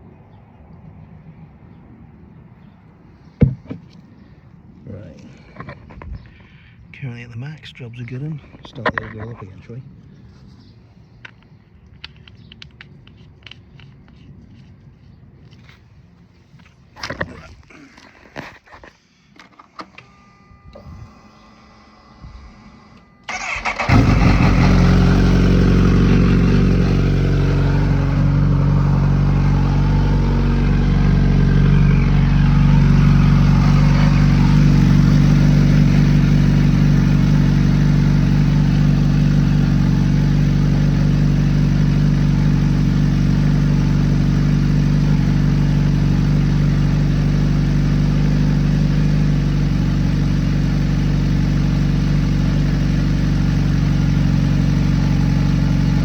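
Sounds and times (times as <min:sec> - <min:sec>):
motorcycle engine idling: 0:22.2 - 0:56.0.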